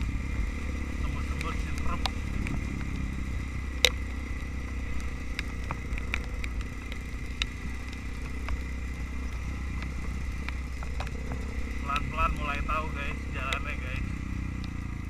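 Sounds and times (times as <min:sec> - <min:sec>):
motorcycle engine rumbling: 0:00.0 - 0:15.0
sharp clicks and knocks: 0:03.8 - 0:04.2, 0:04.9 - 0:12.1.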